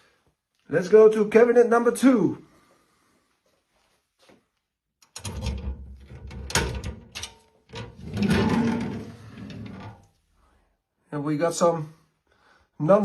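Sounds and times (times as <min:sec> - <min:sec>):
cabinet lock clicks and rattles: 0:05.0 - 0:08.7.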